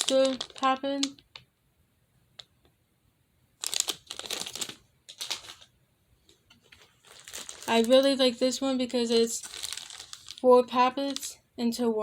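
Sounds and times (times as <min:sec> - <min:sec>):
plastic toys rustling and crinkling: 0:00.0 - 0:01.4, 0:03.6 - 0:11.4.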